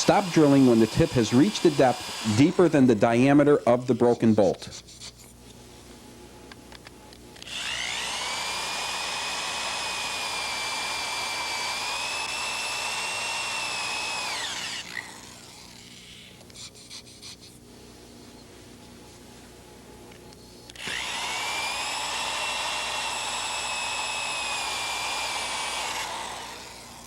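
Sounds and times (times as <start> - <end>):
electric drill whining: 0.0 - 3.2, 7.4 - 16.4, 20.7 - 27.0.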